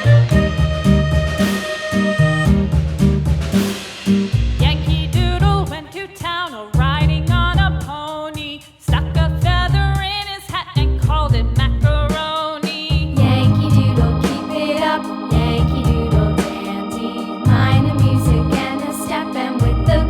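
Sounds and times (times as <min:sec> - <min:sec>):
pop song with singing: 0:04.6 - 0:20.0.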